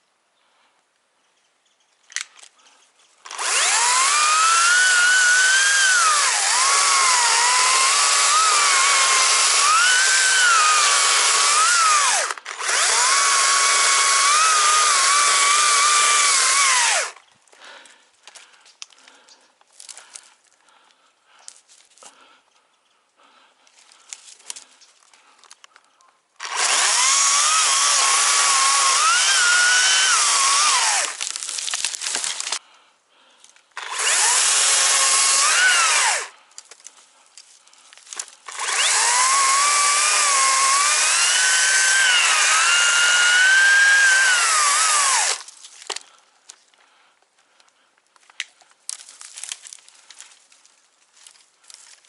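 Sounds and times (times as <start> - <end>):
chainsaw cutting wood: 3.2 - 17.2, 26.4 - 32.6, 33.8 - 37.0, 38.0 - 46.2.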